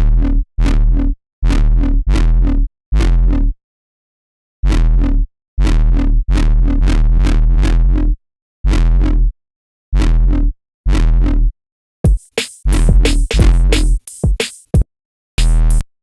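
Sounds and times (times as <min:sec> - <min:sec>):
heavy synth bass stabs: 0:12.1 - 0:14.2, 0:15.4 - 0:15.8.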